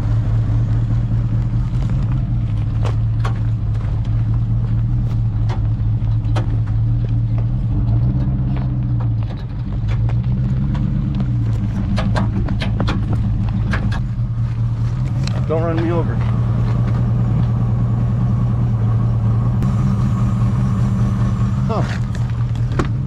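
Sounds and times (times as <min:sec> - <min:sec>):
car engine droning: 0:00.0 - 0:23.0
clunks and knocks under vehicle: 0:02.3 - 0:17.6.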